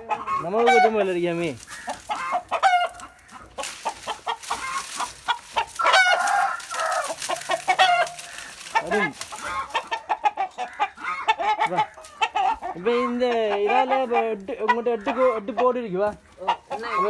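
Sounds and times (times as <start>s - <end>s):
chickens clucking and squawking: 0.0s - 17.0s
rooster crowing: 4.5s - 10.0s.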